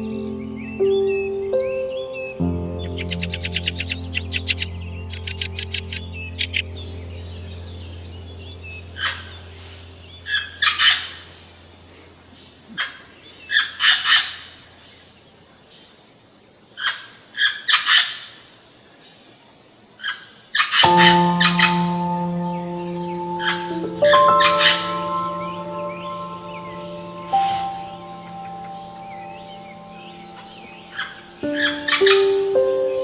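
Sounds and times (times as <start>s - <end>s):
low background music drone: 0.0s - 12.7s, 20.8s - 33.0s
harsh bird calls: 20.0s - 33.0s
bird trilling: 20.8s - 33.0s.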